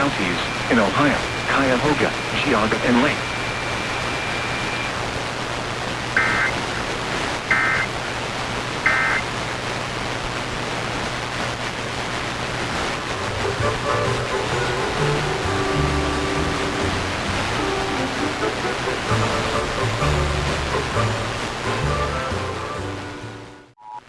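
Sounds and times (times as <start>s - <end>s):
low hum: 0.0s - 6.5s
steady hiss: 0.0s - 23.3s
music: 13.0s - 23.8s.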